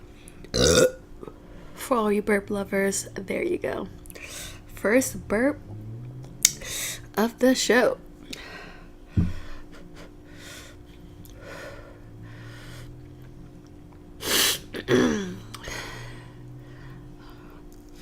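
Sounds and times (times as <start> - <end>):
sharp sneeze or gasp: 14.2 - 14.7.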